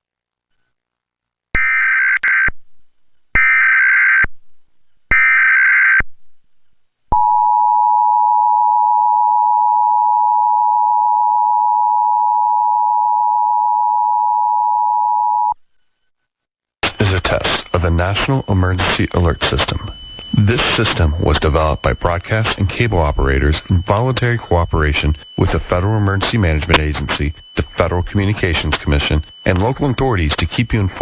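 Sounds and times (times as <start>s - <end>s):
digital data bursts: 16.8s - 31.0s
two-tone attention signal: 16.8s - 31.0s.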